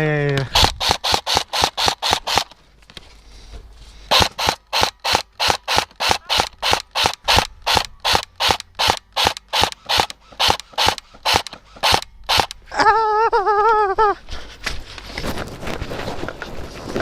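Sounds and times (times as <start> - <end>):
airsoft gun firing single shots: 0.5 - 2.5, 4.1 - 12.6.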